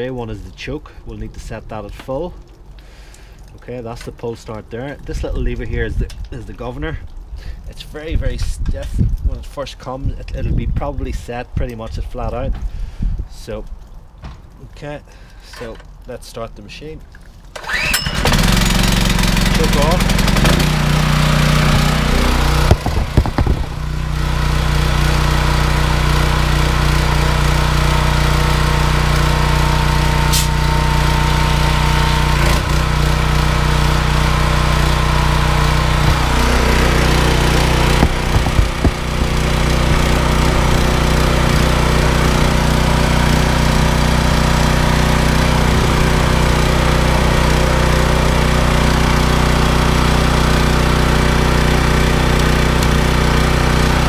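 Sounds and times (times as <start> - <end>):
pressure washer engine running: 17.6 - 54.0.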